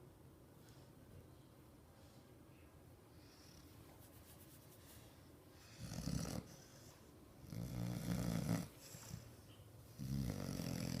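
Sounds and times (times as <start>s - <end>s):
puppy snoring: 5.6s - 9.3s, 9.9s - 11.0s.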